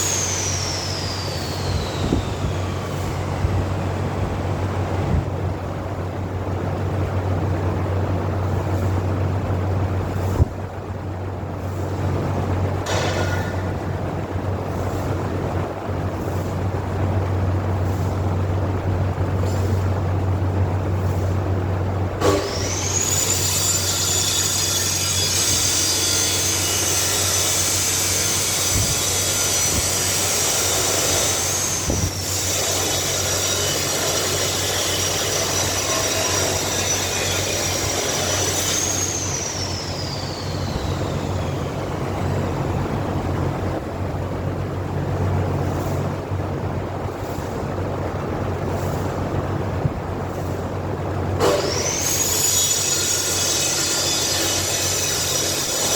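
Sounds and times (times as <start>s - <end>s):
angle grinder whining and grinding: 0.0s - 3.6s, 22.2s - 42.4s, 51.4s - 55.9s
grinder spinning down: 0.0s - 3.9s, 22.2s - 42.5s, 51.4s - 55.9s.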